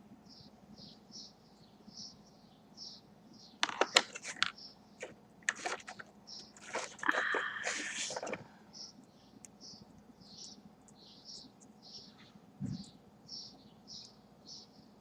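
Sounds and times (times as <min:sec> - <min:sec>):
packaging crinkling: 0:03.6 - 0:08.5.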